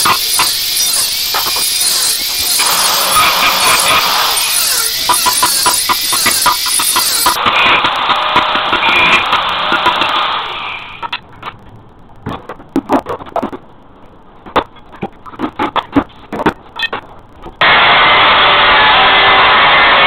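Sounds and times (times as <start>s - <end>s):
loud steady noise: 0.0s - 14.8s, 15.6s - 20.0s
sharp knocks and cracks: 14.4s - 17.6s.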